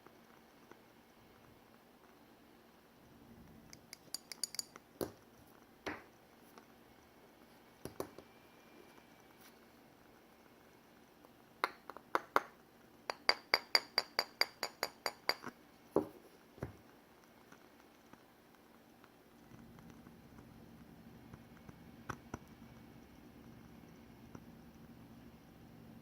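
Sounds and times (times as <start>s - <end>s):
tapping on glass jar: 3.8s - 5.2s, 13.1s - 16.2s.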